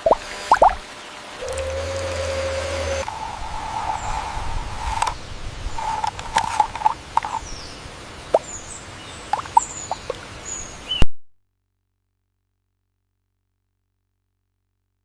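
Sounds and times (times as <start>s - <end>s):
faint high bird chirps: 7.3s - 11.1s.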